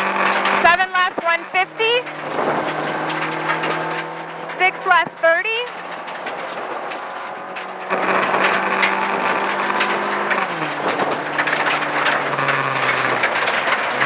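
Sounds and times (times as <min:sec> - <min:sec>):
gravel noise: 0:00.0 - 0:14.0
rally car engine under hard throttle: 0:00.0 - 0:14.0.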